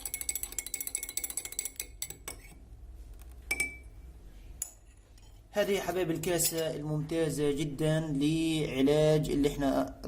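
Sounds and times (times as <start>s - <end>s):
spoon clinking against glass: 0.0s - 2.5s, 3.5s - 3.9s.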